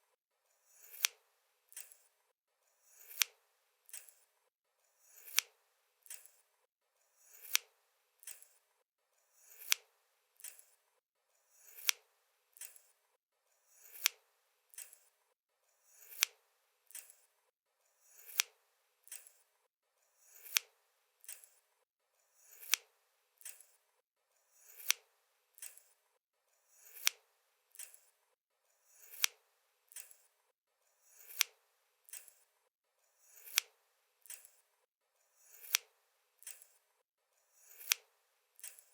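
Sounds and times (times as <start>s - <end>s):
scissors snipping: 0.8s - 2.1s, 3.0s - 4.2s, 5.2s - 6.4s, 7.3s - 8.6s, 9.5s - 10.8s, 11.7s - 12.0s, 12.6s - 12.9s, 13.8s - 15.1s, 16.0s - 17.2s, 18.2s - 19.4s, 20.4s - 21.5s, 22.6s - 23.8s, 24.7s - 25.0s, 25.6s - 25.9s, 26.8s - 28.1s, 29.0s - 30.2s, 31.2s - 32.4s, 33.4s - 34.6s, 35.5s - 36.8s, 37.7s - 38.9s.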